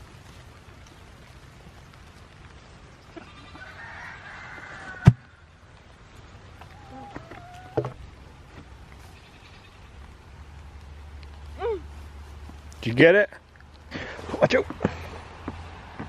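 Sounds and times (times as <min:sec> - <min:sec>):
goat bleating: 0:03.1 - 0:03.7.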